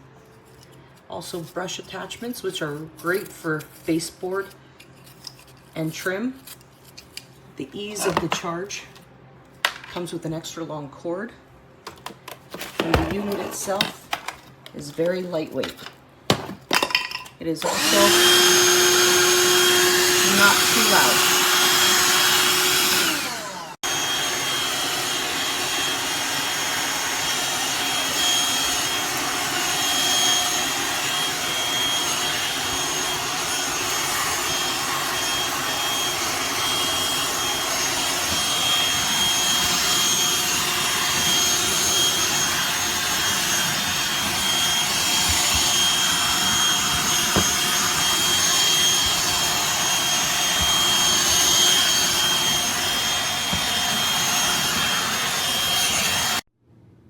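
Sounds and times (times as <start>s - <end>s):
handheld vacuum running: 12.6s - 14.2s, 17.6s - 56.5s.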